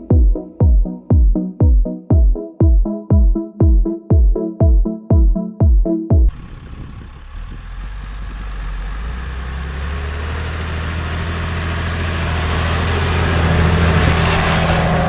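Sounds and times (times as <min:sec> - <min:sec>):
tractor diesel engine running: 0:06.3 - 0:15.0.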